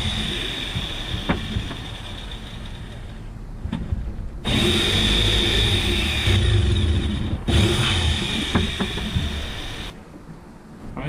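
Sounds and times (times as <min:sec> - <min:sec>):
power tool cutting panel: 0:00.0 - 0:03.2, 0:04.5 - 0:10.0.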